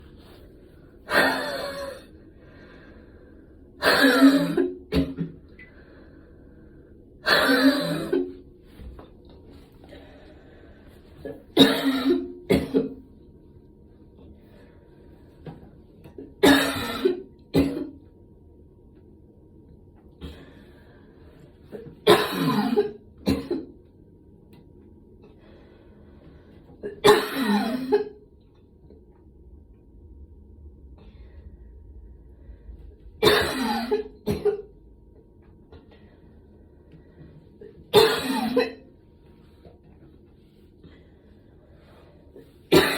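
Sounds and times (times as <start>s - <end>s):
person coughing hard: 1.1s - 2.1s, 3.8s - 5.4s, 7.2s - 8.4s, 11.6s - 13.0s, 16.4s - 18.0s, 22.0s - 23.8s, 26.8s - 28.2s, 33.2s - 34.7s, 37.9s - 38.9s.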